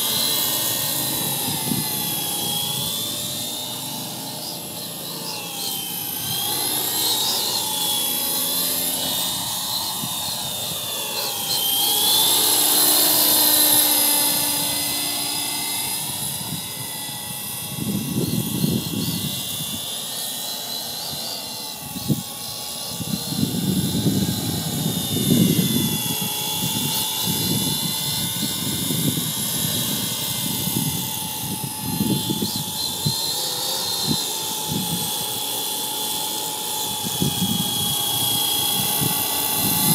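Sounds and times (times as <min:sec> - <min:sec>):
rc helicopter motor whining: 0:00.0 - 0:39.9
wind buffeting microphone: 0:00.3 - 0:03.3, 0:13.7 - 0:19.8, 0:21.8 - 0:33.2, 0:36.8 - 0:39.9.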